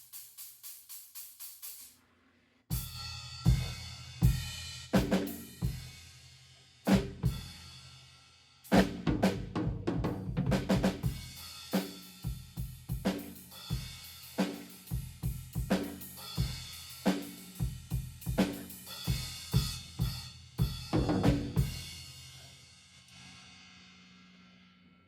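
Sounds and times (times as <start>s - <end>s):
drum kit beat: 0.0s - 2.0s, 2.7s - 6.2s, 6.9s - 7.7s, 8.7s - 22.5s.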